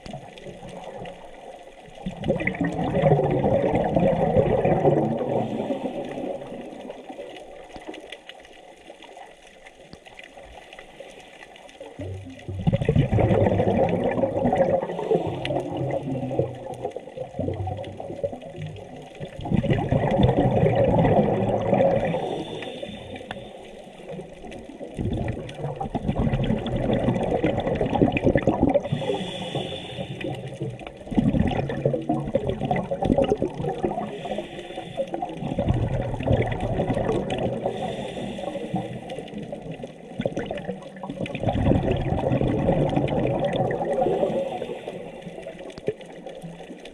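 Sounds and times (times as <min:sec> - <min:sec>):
exhaled bubbles rushing underwater: 0:00.0 - 0:46.9
regulator hiss: 0:22.2 - 0:24.1, 0:28.9 - 0:30.6, 0:34.1 - 0:35.2.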